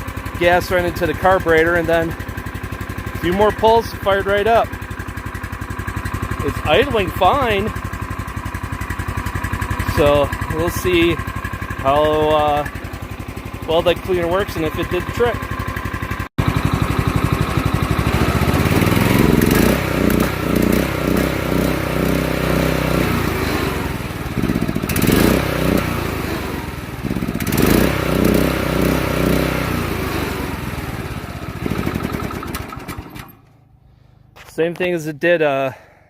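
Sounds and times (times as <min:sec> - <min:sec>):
small engine revving: 0:09.5 - 0:11.2, 0:16.3 - 0:34.4.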